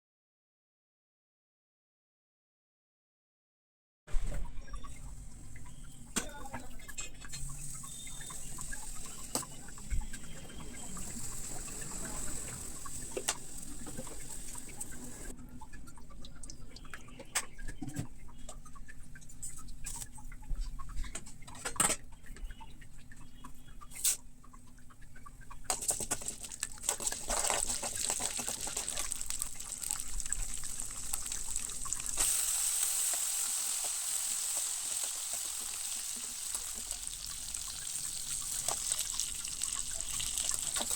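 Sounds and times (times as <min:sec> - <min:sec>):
food sizzling in hot oil: 0:07.3 - 0:15.3, 0:25.7 - 0:40.9.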